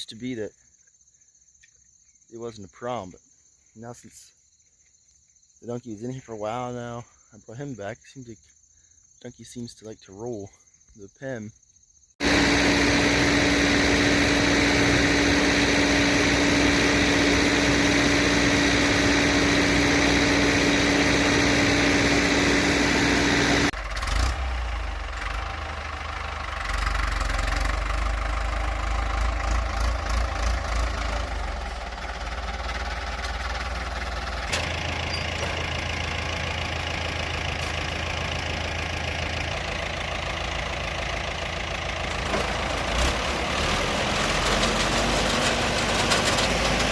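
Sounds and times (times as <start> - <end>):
tractor engine running: 12.2 - 46.9.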